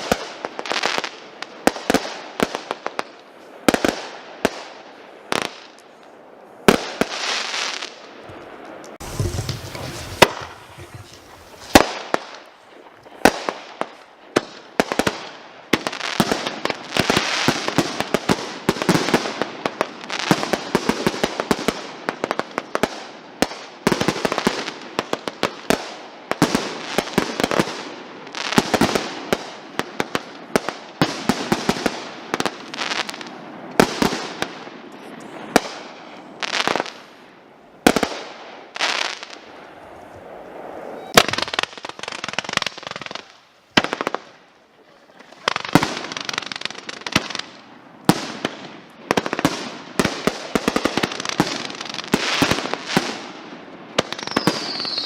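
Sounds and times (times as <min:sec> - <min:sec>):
firework crackling: 0:00.0 - 0:23.1, 0:24.0 - 0:55.0
firework bangs: 0:06.6 - 0:19.5, 0:28.6 - 0:44.4, 0:45.3 - 0:53.4.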